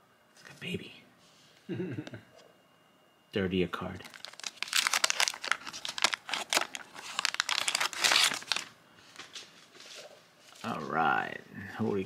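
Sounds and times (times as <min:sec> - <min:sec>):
waxed paper wrapper crinkling: 0:04.0 - 0:10.7.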